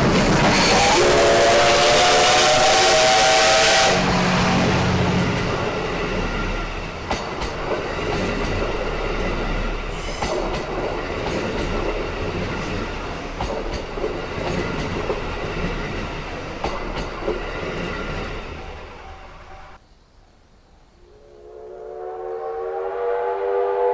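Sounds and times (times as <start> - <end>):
train rumbling past: 0.0 - 19.8, 20.8 - 23.9
wheels clacking over rail joints: 4.0 - 19.4.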